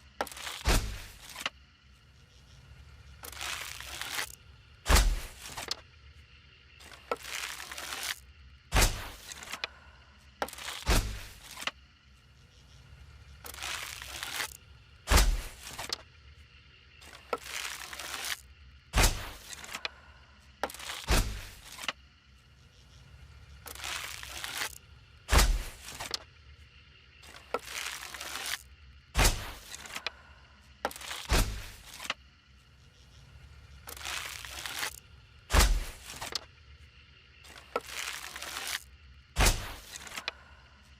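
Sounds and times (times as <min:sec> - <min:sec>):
bow string snapping with thump: 0:35.5 - 0:36.4.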